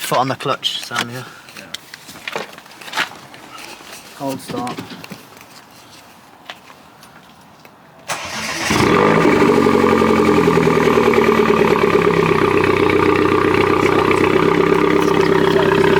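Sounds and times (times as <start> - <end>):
starter motor cranking: 8.1 - 15.9
car engine idling: 8.2 - 15.9.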